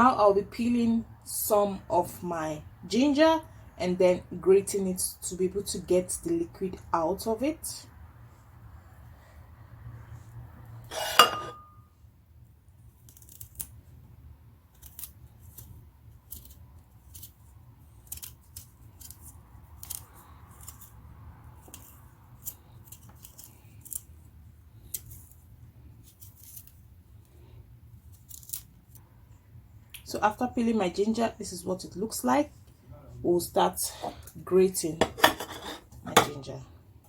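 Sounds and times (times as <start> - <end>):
scraping ginger peel: 12.8 - 29.0.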